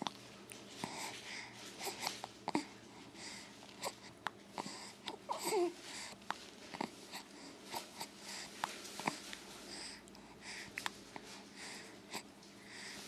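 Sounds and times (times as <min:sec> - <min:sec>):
baby cooing: 0:05.0 - 0:05.8.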